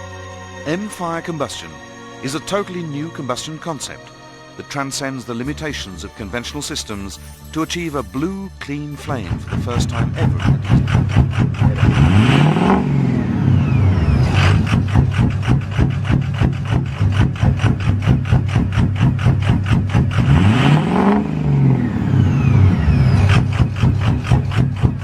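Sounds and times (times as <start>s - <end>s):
engine running: 7.6s - 25.0s.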